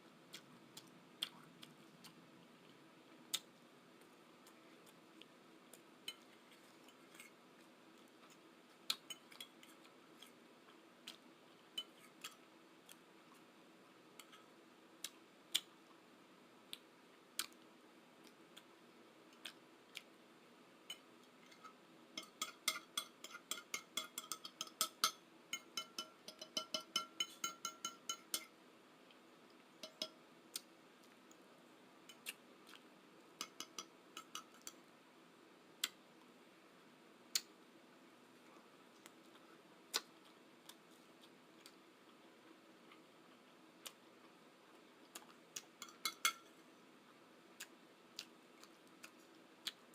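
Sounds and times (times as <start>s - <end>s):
eating clicks and taps: 22.2s - 28.5s.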